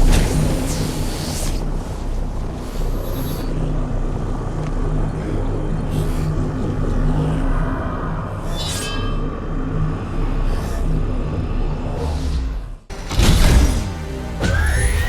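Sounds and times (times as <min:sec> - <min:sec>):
low engine-like rumble: 0:00.0 - 0:08.5.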